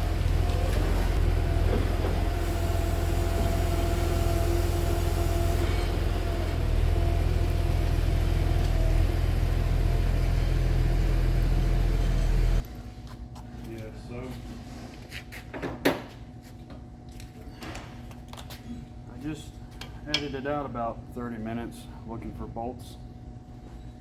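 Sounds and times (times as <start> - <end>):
vehicle engine rumble: 0.0 - 12.6.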